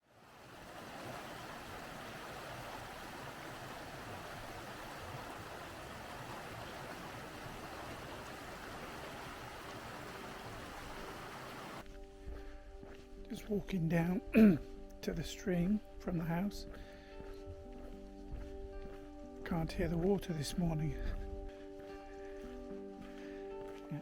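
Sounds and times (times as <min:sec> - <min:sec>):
stream rushing: 0:00.0 - 0:11.8.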